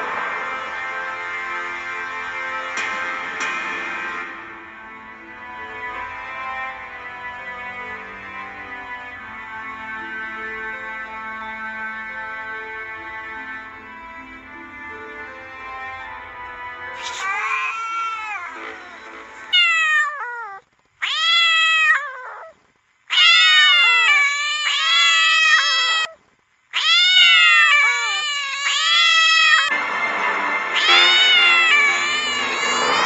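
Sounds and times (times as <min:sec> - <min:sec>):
music: 0:00.0 - 0:19.6, 0:29.0 - 0:33.0
cat yowling: 0:17.0 - 0:29.7, 0:30.8 - 0:33.0.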